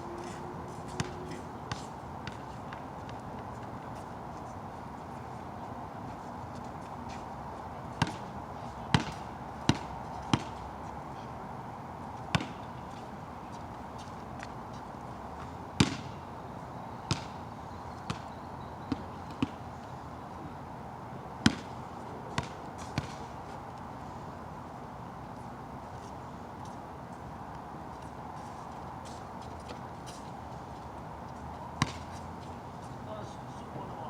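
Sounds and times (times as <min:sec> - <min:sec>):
basketball bouncing: 0:08.9 - 0:10.6, 0:12.3 - 0:12.6, 0:21.4 - 0:21.7.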